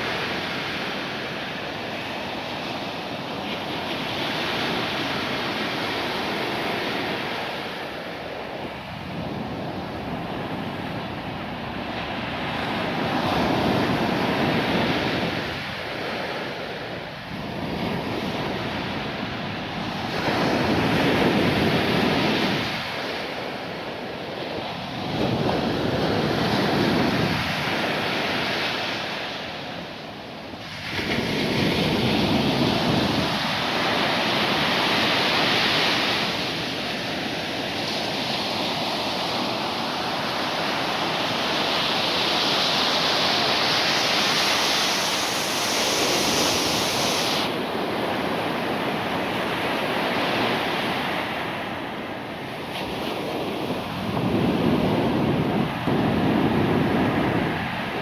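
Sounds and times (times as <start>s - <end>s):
surf breaking on a beach: 0.0s - 58.0s
wind buffeting microphone: 8.2s - 23.6s, 30.6s - 35.5s, 52.5s - 58.0s.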